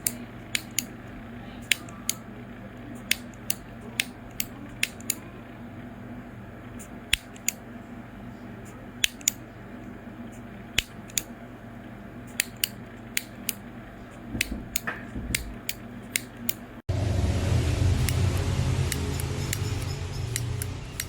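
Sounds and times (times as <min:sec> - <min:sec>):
lighter clicking: 0:00.0 - 0:00.9, 0:09.0 - 0:09.4, 0:10.8 - 0:11.3
steady low hum: 0:00.0 - 0:21.0.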